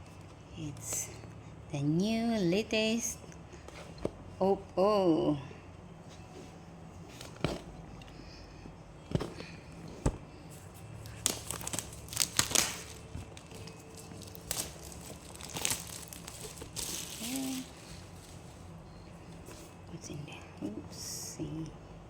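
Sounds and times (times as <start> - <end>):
plastic wrap crinkling: 11.0 - 18.7.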